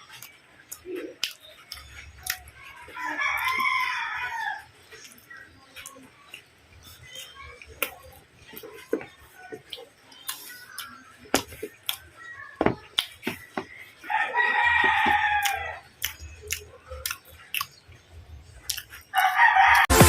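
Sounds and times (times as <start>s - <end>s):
person eating: 0.0s - 19.9s
rooster crowing: 3.0s - 4.7s, 14.0s - 15.8s, 19.2s - 19.9s.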